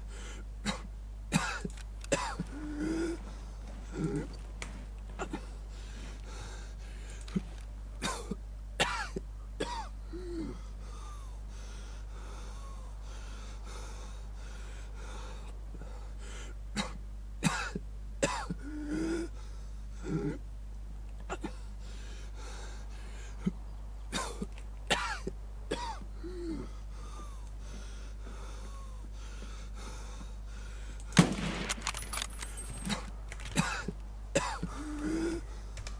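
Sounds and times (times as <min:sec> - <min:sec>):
person coughing: 0:00.7 - 0:03.2, 0:08.0 - 0:10.6, 0:33.6 - 0:35.4.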